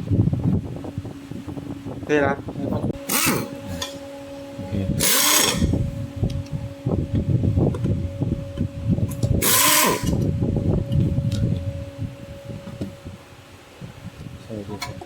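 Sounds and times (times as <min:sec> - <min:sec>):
electric screwdriver running: 0:03.1 - 0:03.5, 0:05.0 - 0:05.6, 0:09.4 - 0:10.1.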